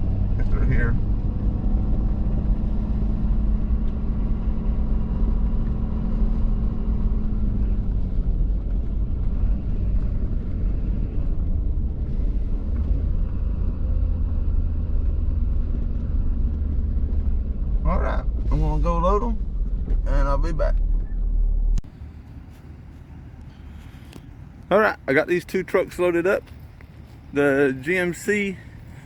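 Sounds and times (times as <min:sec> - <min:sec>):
truck engine rumbling: 0:00.0 - 0:29.0
humming tone: 0:17.2 - 0:21.8.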